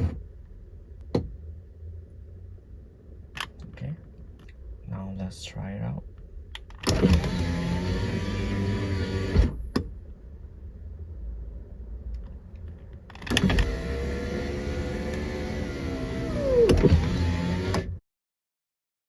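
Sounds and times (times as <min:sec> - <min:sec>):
power window motor whining: 0:06.8 - 0:09.6, 0:13.2 - 0:18.0.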